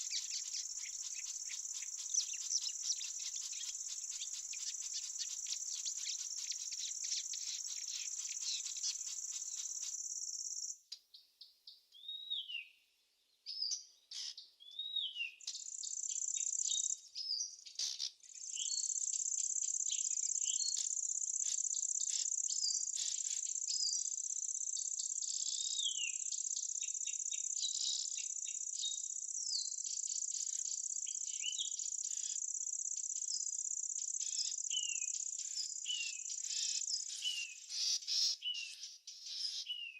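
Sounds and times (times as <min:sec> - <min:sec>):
insects trilling: 0:00.0 - 0:10.7, 0:31.9 - 0:38.4
songbirds chirping: 0:00.0 - 0:21.0, 0:23.6 - 0:39.9.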